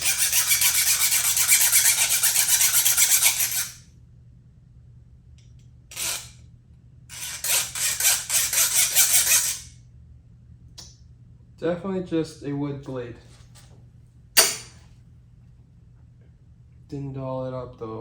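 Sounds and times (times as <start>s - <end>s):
hand saw rasping on steel: 0.0s - 3.8s, 7.1s - 9.7s.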